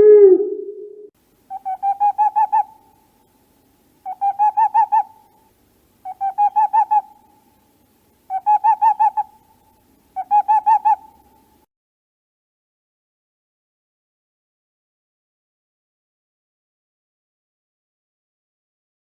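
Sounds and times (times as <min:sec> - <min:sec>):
owl hooting: 0:00.0 - 0:03.0, 0:04.0 - 0:07.3, 0:08.3 - 0:11.5.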